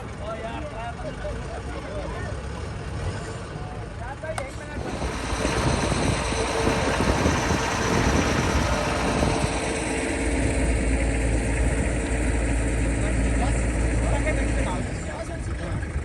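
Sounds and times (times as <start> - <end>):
engine running under load: 0.0 - 16.0
noisy rush: 4.4 - 16.0.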